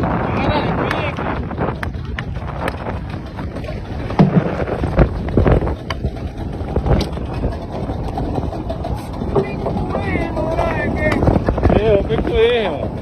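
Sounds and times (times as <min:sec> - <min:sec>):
boat noise: 0:00.0 - 0:13.0
water: 0:00.0 - 0:13.0
wind on microphone: 0:00.0 - 0:13.0.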